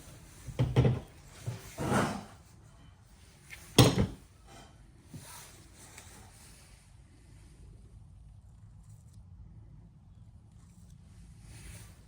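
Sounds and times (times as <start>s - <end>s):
objects knocking on hard surface: 0.5s - 1.6s, 3.8s - 4.2s.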